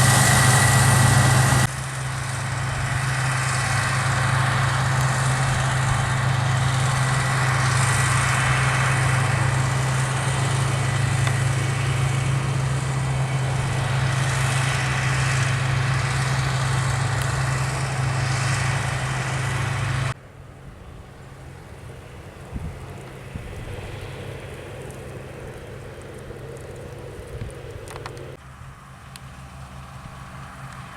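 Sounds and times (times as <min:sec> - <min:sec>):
diesel engine running: 0:00.0 - 0:30.9.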